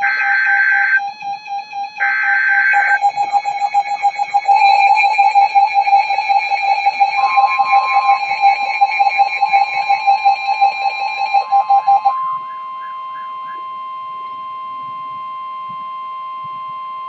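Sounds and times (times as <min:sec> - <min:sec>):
pulsing electronic alert tone: 0:00.0 - 0:15.2
higher steady alert tone: 0:02.6 - 0:13.7.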